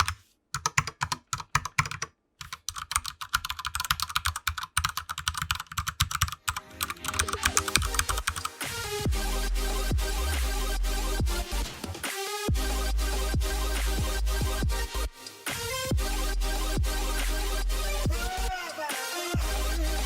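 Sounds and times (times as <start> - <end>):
music: 6.2 - 20.0.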